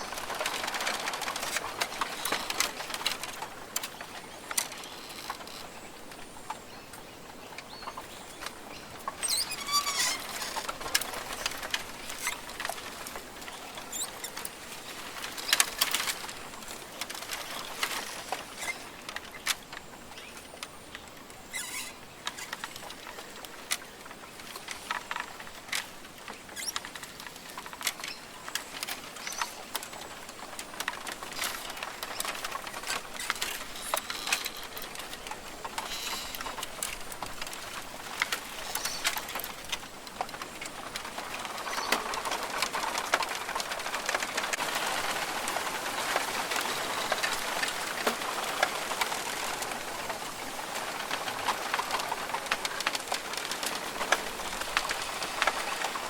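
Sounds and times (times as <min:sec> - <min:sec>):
rainforest hiss with patters: 0:00.0 - 0:56.0
bird calls: 0:04.1 - 0:14.5, 0:20.1 - 0:24.0.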